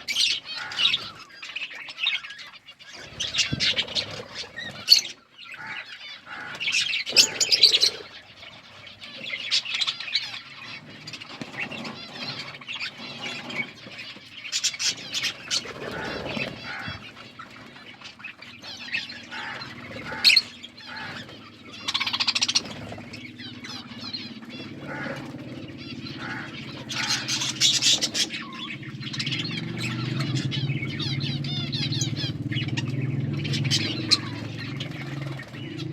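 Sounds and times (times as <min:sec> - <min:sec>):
budgerigars chirping: 0:00.0 - 0:35.9
steady low hum: 0:15.0 - 0:35.9.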